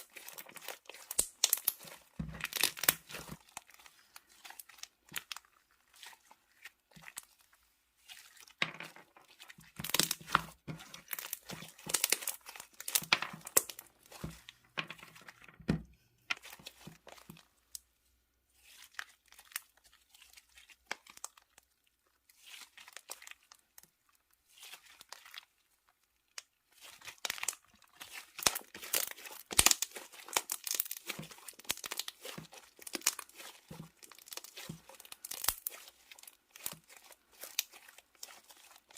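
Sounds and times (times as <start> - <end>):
slime crackling and popping: 0.0 - 7.3, 9.3 - 14.5, 26.3 - 38.9.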